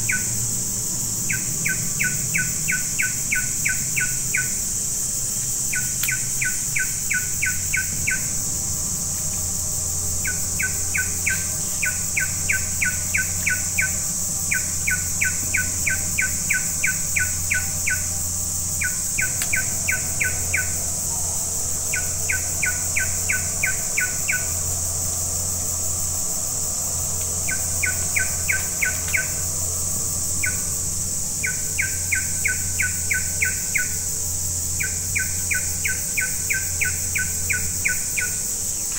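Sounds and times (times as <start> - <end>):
high insect drone: 0.0 - 38.9
animal chirping: 27.5 - 29.4.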